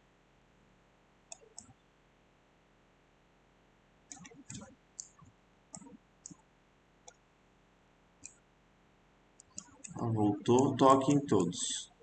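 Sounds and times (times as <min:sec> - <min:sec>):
computer mouse clicking: 0:01.3 - 0:01.8, 0:04.1 - 0:06.4, 0:07.0 - 0:07.2, 0:08.2 - 0:08.4, 0:09.4 - 0:10.8.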